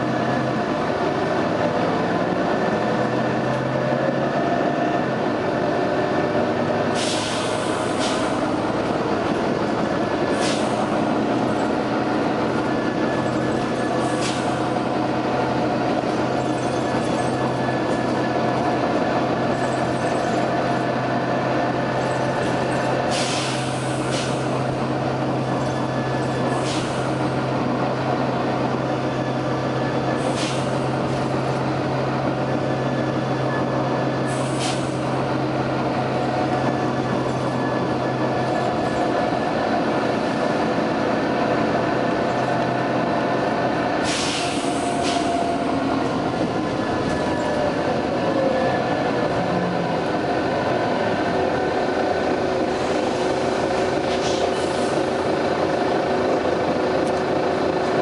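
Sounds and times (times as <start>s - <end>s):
bus diesel engine droning: 0.0s - 58.0s
compressed air hissing: 7.0s - 8.4s, 10.4s - 10.8s, 23.1s - 24.4s, 34.3s - 35.0s, 44.0s - 45.3s.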